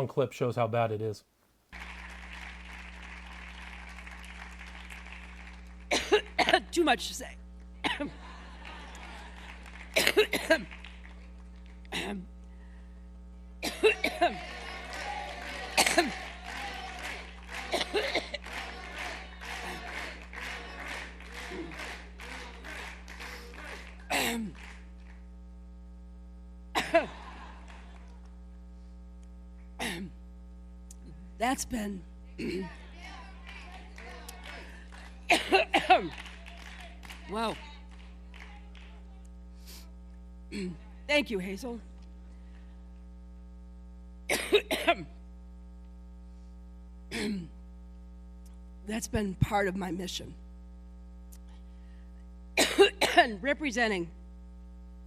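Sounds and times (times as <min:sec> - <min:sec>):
electrical mains hum: 0:00.0 - 0:55.0
woman coughing: 0:05.9 - 0:06.8, 0:07.8 - 0:08.2, 0:10.0 - 0:10.7, 0:11.9 - 0:12.3, 0:13.6 - 0:14.4, 0:15.7 - 0:16.3, 0:17.6 - 0:18.4, 0:24.1 - 0:24.6, 0:26.8 - 0:27.2, 0:29.8 - 0:30.2, 0:32.4 - 0:32.8, 0:35.3 - 0:36.2, 0:40.5 - 0:40.9, 0:44.3 - 0:45.2, 0:47.1 - 0:47.6, 0:52.6 - 0:53.5.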